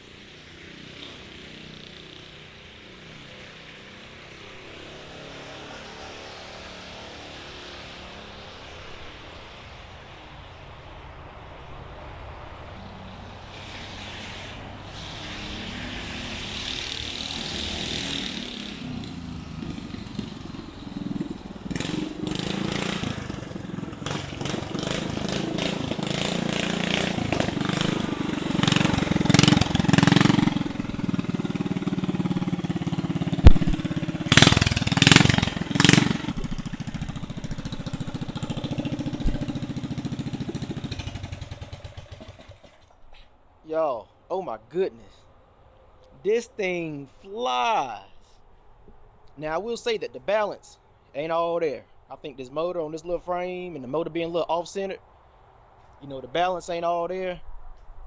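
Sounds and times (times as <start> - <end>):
minibike engine running: 0.0 - 5.0, 12.7 - 42.9.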